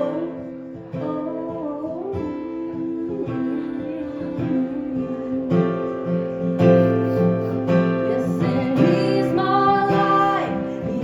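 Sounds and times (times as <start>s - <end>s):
acoustic guitar playing: 0.0s - 11.0s.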